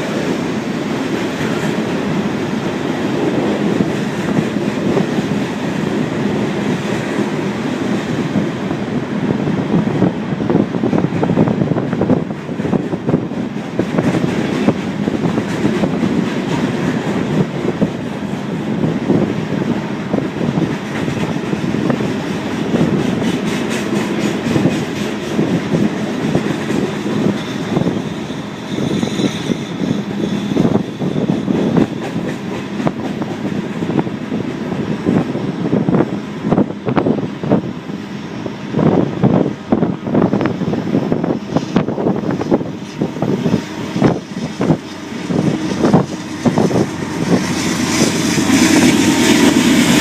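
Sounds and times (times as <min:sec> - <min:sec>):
train wheels clicking over rail joints: 0:00.0 - 0:37.6, 0:38.8 - 0:50.0
high wheel squeal: 0:27.2 - 0:31.6.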